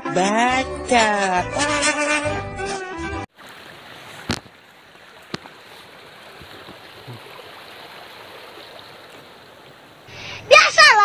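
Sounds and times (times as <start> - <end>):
water flowing: 3.3 - 11.0.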